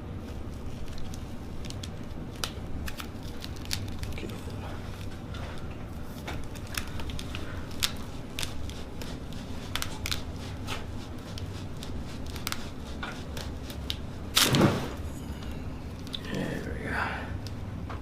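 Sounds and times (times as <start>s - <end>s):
low steady hum: 0.0s - 18.0s
light clicks and crinkles: 0.2s - 14.5s.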